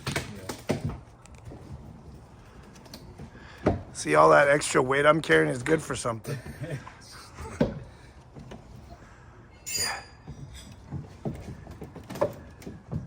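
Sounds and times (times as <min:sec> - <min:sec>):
high-pitched squeak: 0:09.6 - 0:10.7.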